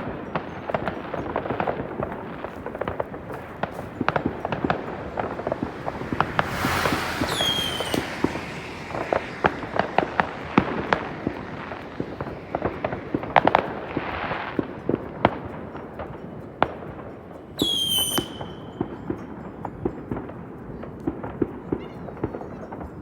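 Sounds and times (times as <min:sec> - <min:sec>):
whistling firework: 0:00.0 - 0:14.7, 0:17.6 - 0:20.0
fireworks banging and cracking: 0:00.4 - 0:15.4.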